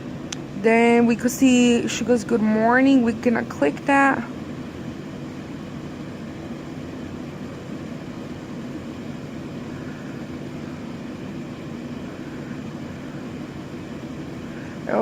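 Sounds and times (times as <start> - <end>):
low hum: 0.0 - 15.0.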